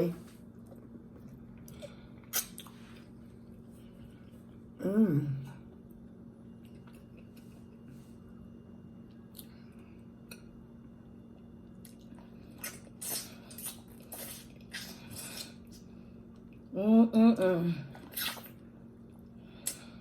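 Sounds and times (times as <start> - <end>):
faint steady hum: 0.0 - 20.0
wet chewing and lip-smacking: 0.6 - 3.6, 11.4 - 16.7, 18.0 - 18.6.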